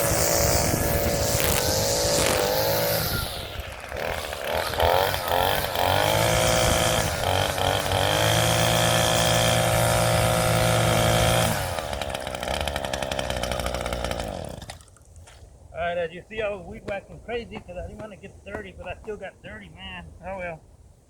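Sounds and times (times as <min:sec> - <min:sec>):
string trimmer engine revving: 0:00.0 - 0:14.8.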